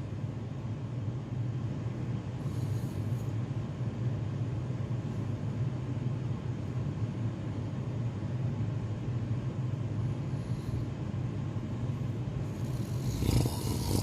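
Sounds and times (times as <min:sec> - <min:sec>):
person snoring: 0:12.5 - 0:14.0.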